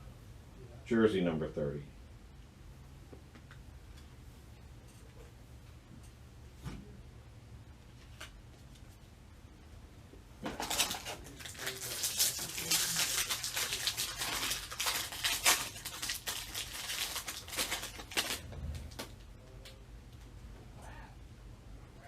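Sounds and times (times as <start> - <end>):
foil wrapper tearing and crinkling: 10.6 - 19.1.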